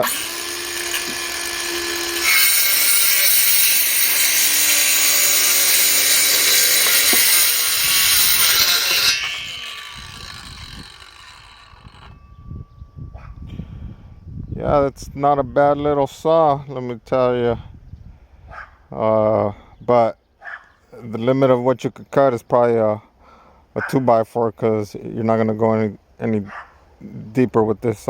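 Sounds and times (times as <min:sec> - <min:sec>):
circular saw cutting wood: 0:00.0 - 0:12.2
saw blade winding down: 0:00.0 - 0:12.3.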